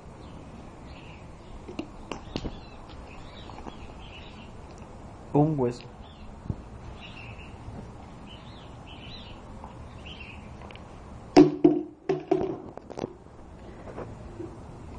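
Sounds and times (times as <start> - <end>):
sharp knocks and clatter: 11.4 - 13.2.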